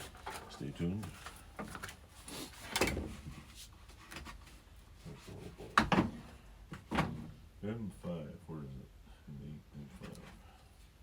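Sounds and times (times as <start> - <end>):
tool kit clunks and rattles: 5.8 - 7.3.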